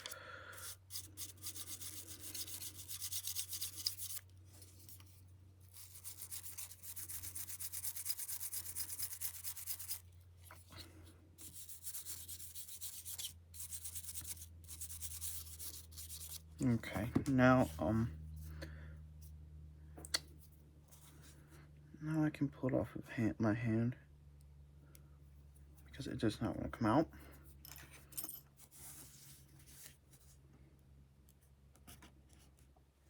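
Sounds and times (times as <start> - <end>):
toothbrush scrubbing: 0.6 - 4.2, 5.7 - 10.0, 11.4 - 16.5.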